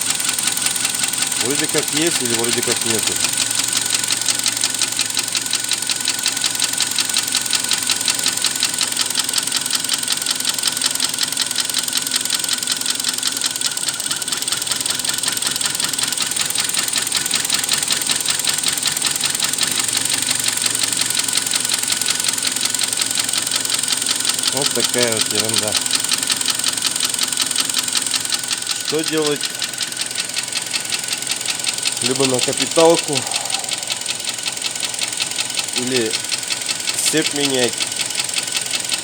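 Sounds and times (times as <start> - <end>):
car engine idling: 0.0 - 39.0
fast ticking engine knock: 0.0 - 39.0.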